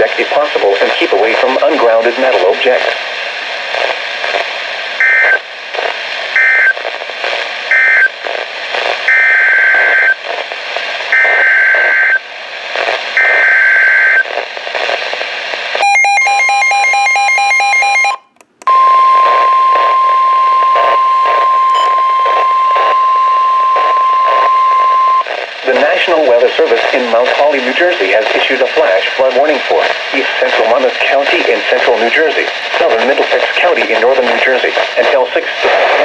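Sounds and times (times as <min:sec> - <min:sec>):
radio hiss: 0:00.0 - 0:15.9, 0:19.1 - 0:36.0
mixed electronic tones: 0:15.8 - 0:25.9
steady attention tone: 0:15.8 - 0:27.3
electronic data bursts: 0:18.7 - 0:26.2.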